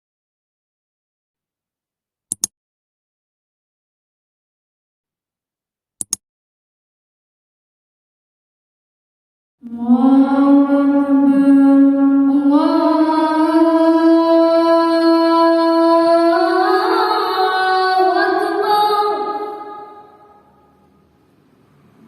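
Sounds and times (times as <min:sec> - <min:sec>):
person chanting call to prayer: 0:09.6 - 0:20.4.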